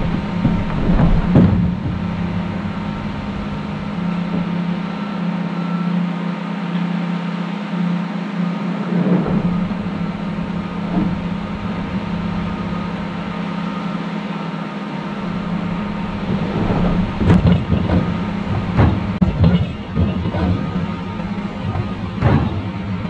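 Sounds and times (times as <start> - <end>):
road rumble: 0.0 - 5.8, 8.2 - 23.0
vehicle engine hum: 0.0 - 23.0
sharp thumps: 15.2 - 23.0.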